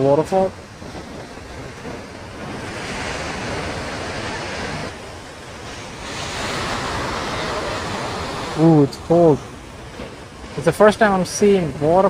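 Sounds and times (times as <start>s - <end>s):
waterfall rushing water: 2.7s - 9.8s.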